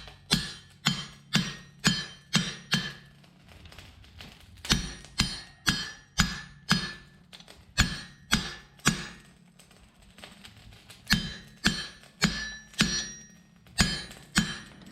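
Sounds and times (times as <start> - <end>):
hammer striking steel on anvil: 0.0 - 3.1, 4.7 - 7.2, 7.8 - 9.3, 11.1 - 14.9.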